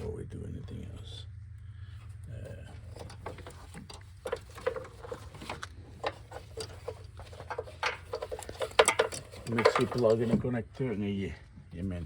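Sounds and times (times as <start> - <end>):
steady low hum: 0.0 - 12.0
car parts clicking and tapping: 2.7 - 10.6.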